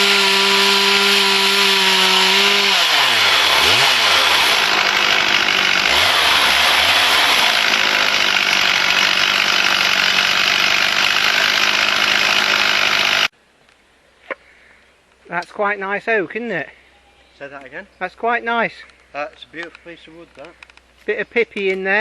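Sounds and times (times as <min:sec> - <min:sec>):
chainsaw cutting through log: 0:00.0 - 0:13.3.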